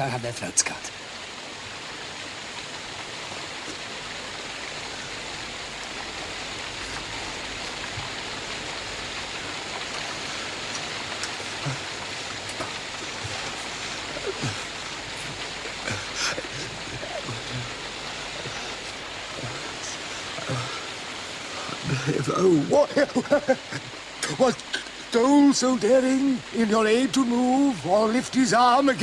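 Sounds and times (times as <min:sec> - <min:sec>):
rushing hiss: 0:00.0 - 0:29.0.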